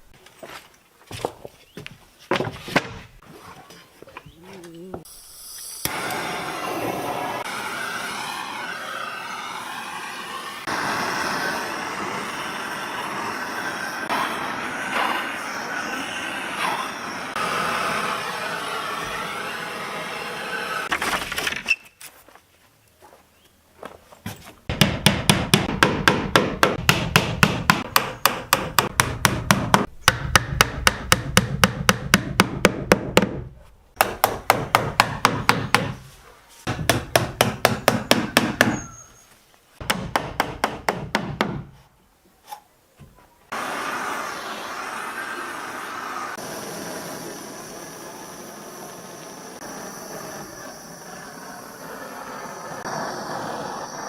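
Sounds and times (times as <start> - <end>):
hammer striking wood: 24.7 - 36.0, 36.7 - 38.9, 39.8 - 41.8.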